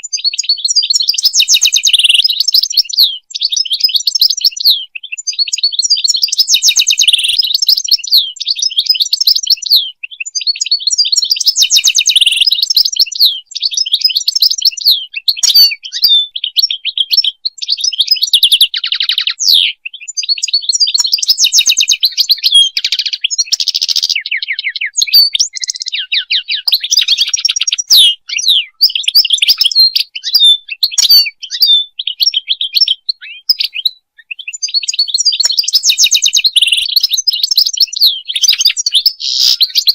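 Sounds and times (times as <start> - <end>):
finch singing twittering trills: 0.0 - 39.9.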